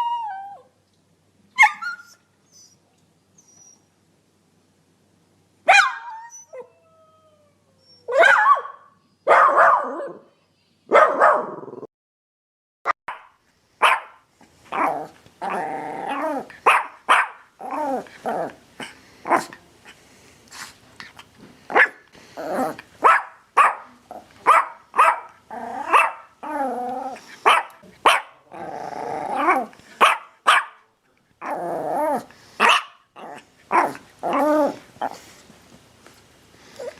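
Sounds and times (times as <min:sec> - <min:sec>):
dog barking: 0:05.7 - 0:06.1, 0:08.1 - 0:10.2, 0:10.9 - 0:11.6, 0:13.1 - 0:14.2, 0:16.6 - 0:17.5, 0:21.7 - 0:22.0, 0:23.0 - 0:26.3, 0:27.5 - 0:28.4, 0:30.0 - 0:30.9, 0:32.6 - 0:33.0
dog growling: 0:14.7 - 0:16.6, 0:17.6 - 0:19.6, 0:22.3 - 0:22.9, 0:25.5 - 0:29.9, 0:31.4 - 0:35.4.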